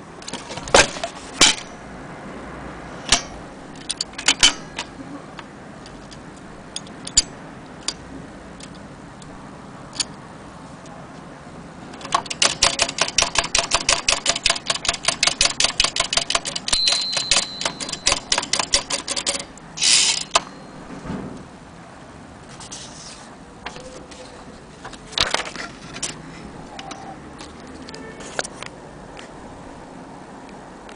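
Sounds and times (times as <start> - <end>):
typewriter keys clacking: 12.0 - 19.6
typewriter bell ring: 12.2 - 20.8.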